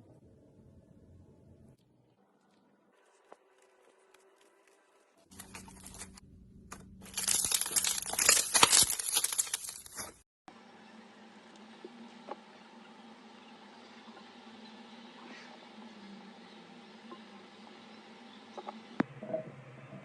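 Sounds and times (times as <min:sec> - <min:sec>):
dry crackling and crunching: 0:03.0 - 0:10.2.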